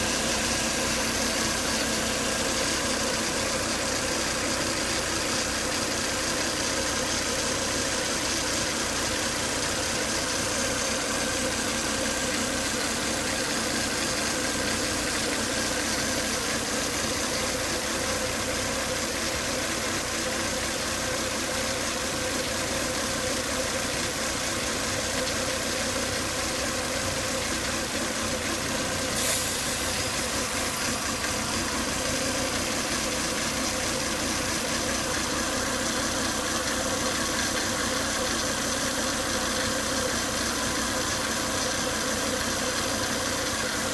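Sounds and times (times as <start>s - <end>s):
car engine idling with whine: 0.0s - 43.9s.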